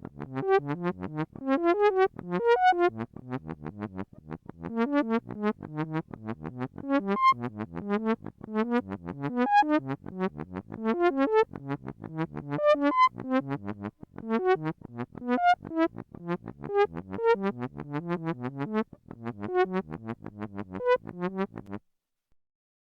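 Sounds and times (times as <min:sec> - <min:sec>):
short low synthesized electronic tones: 0:04.7 - 0:21.8.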